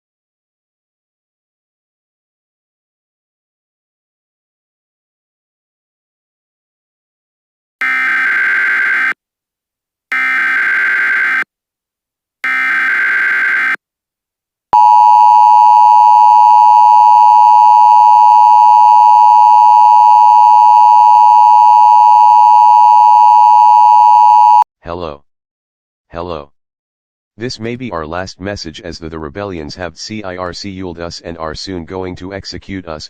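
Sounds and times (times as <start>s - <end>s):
data tone bursts: 14.8s - 24.6s
two-tone attention signal: 14.8s - 24.6s.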